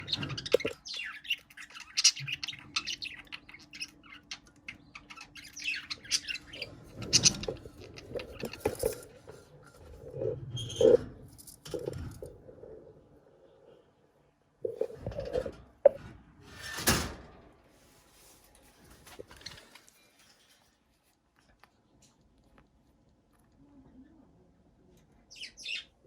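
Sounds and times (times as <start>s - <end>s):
budgerigars chirping and squawking: 0.0s - 9.1s, 25.3s - 26.0s.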